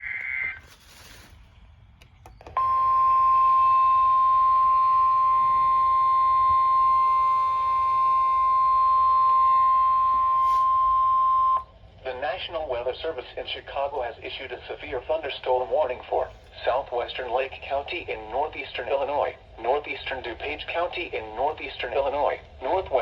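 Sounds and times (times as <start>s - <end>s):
emergency alert tone: 2.5s - 11.7s.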